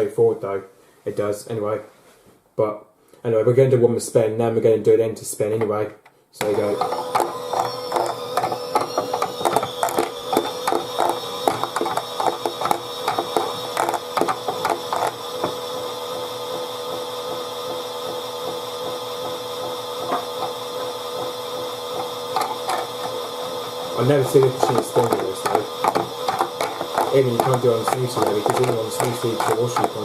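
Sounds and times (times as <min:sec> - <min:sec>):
toy washing machine motor whine: 0:06.4 - 0:30.0.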